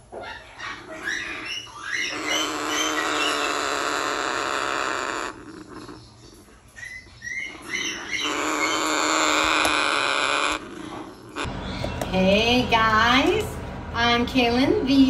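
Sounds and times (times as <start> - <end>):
parrot chicks hissing cries: 0.3 - 6.2, 7.2 - 11.8.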